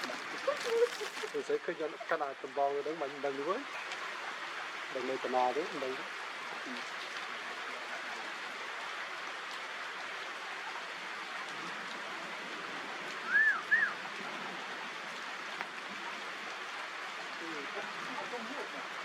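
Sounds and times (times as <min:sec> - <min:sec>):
rain falling: 0:00.0 - 0:19.0
short high arching calls: 0:13.2 - 0:14.0.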